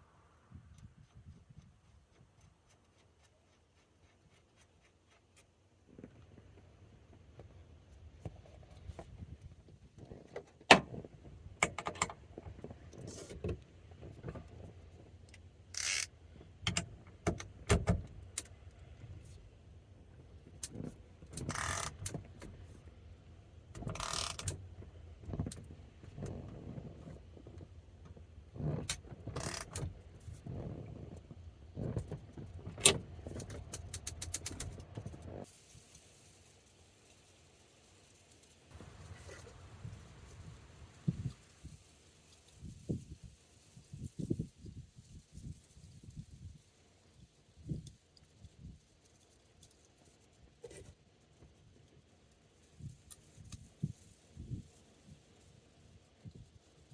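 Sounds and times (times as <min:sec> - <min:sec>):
metallic tool clicks and scrapes: 0:15.7 - 0:16.1, 0:23.9 - 0:24.6, 0:32.8 - 0:35.0.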